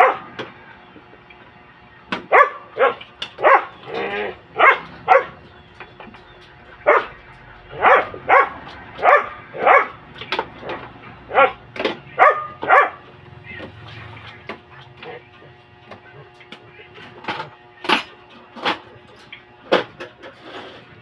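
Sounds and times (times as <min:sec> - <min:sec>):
dog barking: 0:00.0 - 0:00.3, 0:02.3 - 0:05.5, 0:06.8 - 0:10.0, 0:11.3 - 0:13.1.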